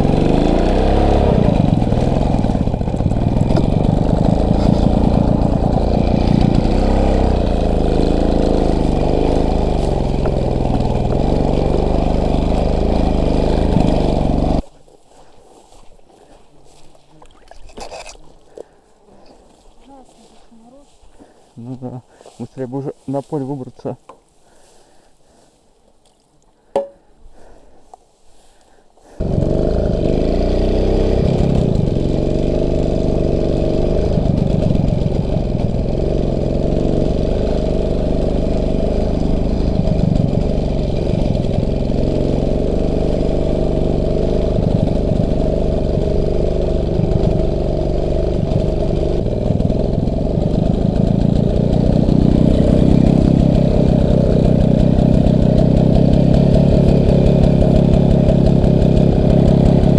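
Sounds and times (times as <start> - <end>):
motorcycle engine revving: 0.0 - 14.7, 29.0 - 59.9.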